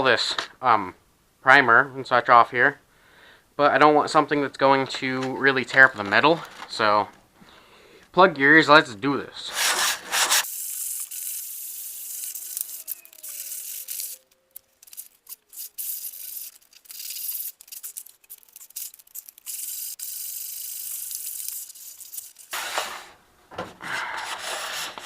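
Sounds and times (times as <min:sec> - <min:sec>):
sandpaper rubbing on metal: 0:09.4 - 0:23.1.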